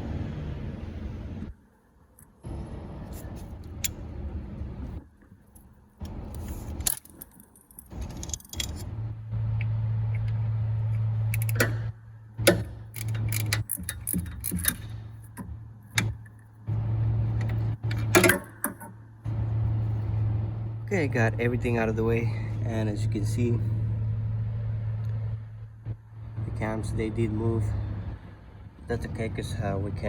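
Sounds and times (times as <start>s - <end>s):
low hum: 0.0s - 30.0s.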